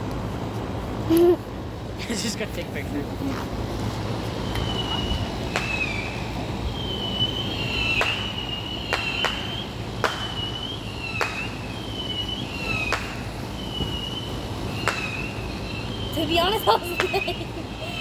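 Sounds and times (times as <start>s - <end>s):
firework whistling: 0.8s - 18.0s
distant firework cracks: 3.3s - 17.4s.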